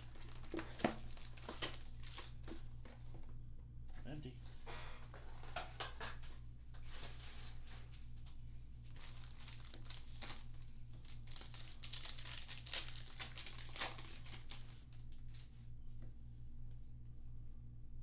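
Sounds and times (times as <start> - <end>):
foil wrappers tearing and crinkling: 0.0 - 2.6, 8.9 - 15.5.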